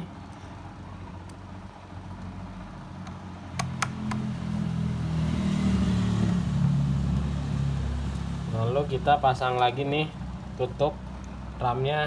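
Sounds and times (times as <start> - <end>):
sharp clicks: 3.0 - 4.3.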